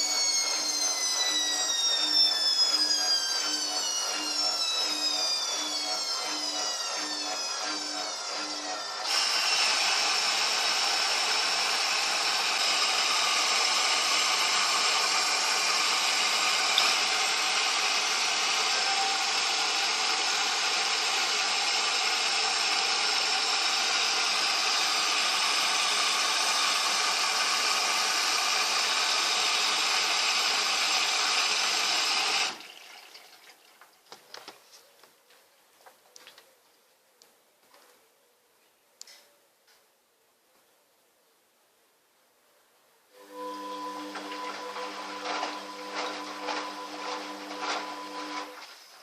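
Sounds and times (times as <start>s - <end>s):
washing machine running: 0.0s - 33.4s, 43.2s - 48.8s.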